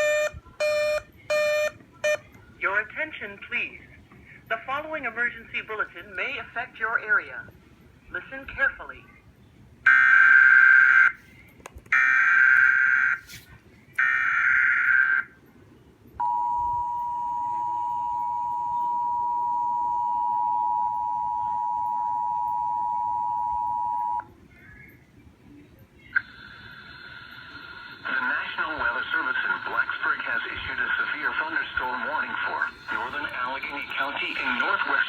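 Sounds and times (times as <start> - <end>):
two-tone attention signal: 0.0 - 2.3.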